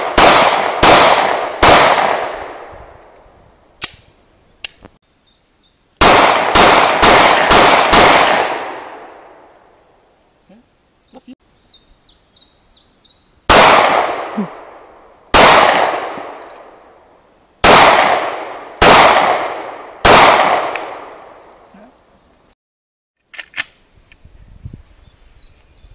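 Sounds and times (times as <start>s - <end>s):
pistol shots echoing: 0.0s - 2.7s, 6.0s - 9.5s, 13.5s - 16.5s, 17.6s - 21.2s.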